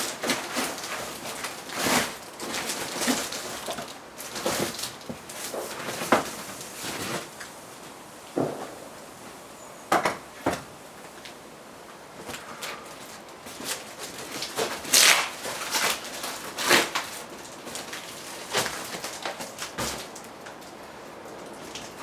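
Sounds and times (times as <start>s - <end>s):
loud scraping rustles: 0.0s - 8.8s.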